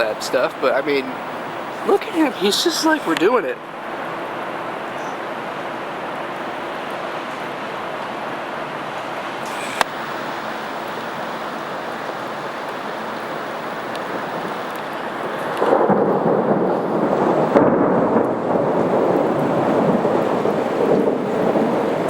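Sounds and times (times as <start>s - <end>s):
steady hiss: 0.0s - 3.6s, 8.9s - 17.2s
thunder rumbling: 9.8s - 22.0s.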